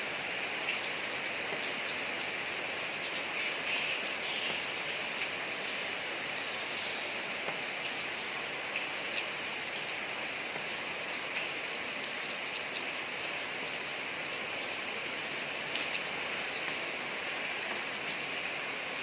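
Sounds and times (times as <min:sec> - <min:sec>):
rain falling on a street: 0:00.0 - 0:19.0
water drips: 0:15.5 - 0:18.2.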